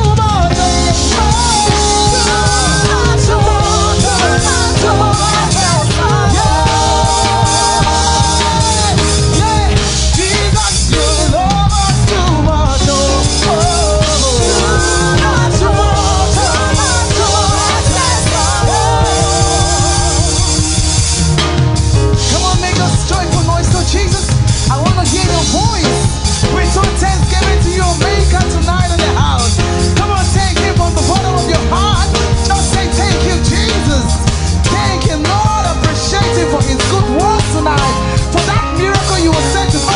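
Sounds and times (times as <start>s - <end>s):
lead singer with vocal runs: 0.0s - 21.2s
band with drum kit playing: 0.0s - 39.9s.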